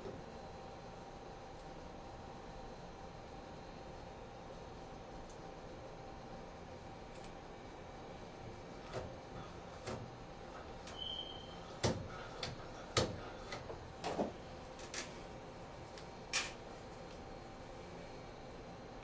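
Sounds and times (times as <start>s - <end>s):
brief high squeak: 10.9s - 11.6s.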